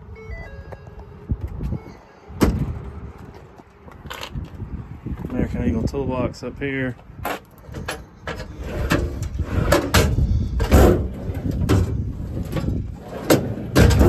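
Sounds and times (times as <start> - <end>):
metal doors and latches clunking: 1.8 - 3.3, 7.2 - 14.0.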